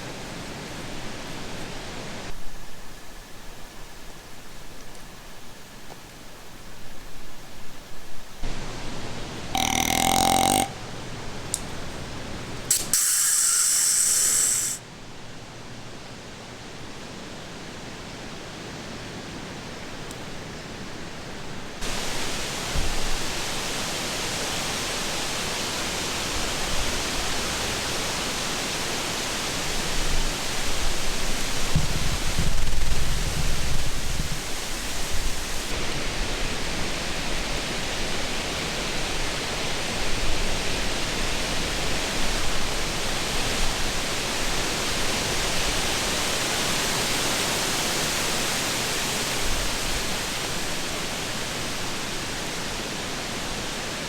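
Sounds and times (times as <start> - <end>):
steady background hiss: 0.0 - 9.5, 10.6 - 54.0
deer snort: 9.6 - 10.8
deer hissing wheeze: 12.7 - 14.8.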